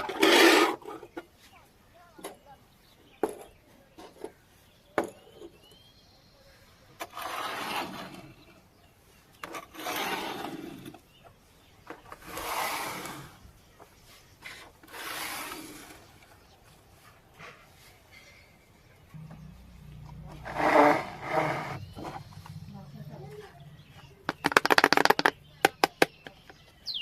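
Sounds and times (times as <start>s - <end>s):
rasping rubbing strokes: 0.0s - 0.9s, 7.0s - 8.5s, 9.4s - 11.0s, 12.1s - 16.4s, 19.2s - 22.6s.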